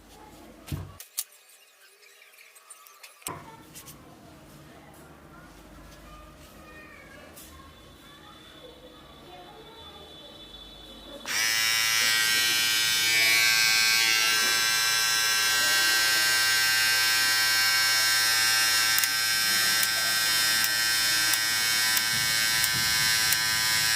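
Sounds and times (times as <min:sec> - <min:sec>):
electric beard trimmer buzzing: 0:11.3 - 0:23.9.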